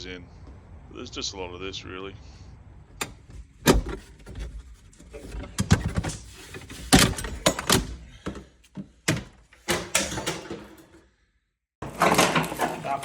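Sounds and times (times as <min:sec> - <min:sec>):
knocks and clunks of car repair: 0:02.9 - 0:11.0.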